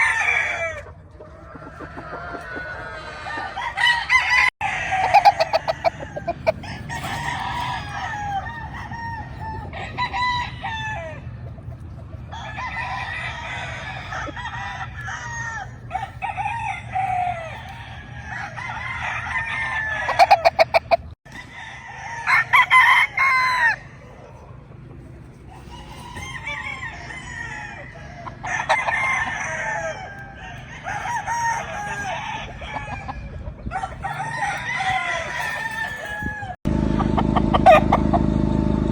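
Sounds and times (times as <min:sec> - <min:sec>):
chickens clucking: 0:00.0 - 0:38.8
roosters crowing: 0:00.0 - 0:38.9.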